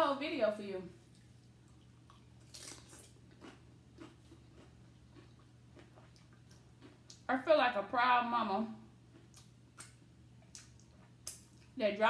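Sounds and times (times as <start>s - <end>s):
low steady hum: 0.0s - 12.0s
chewing and crunching chips: 1.0s - 7.3s, 9.1s - 11.8s.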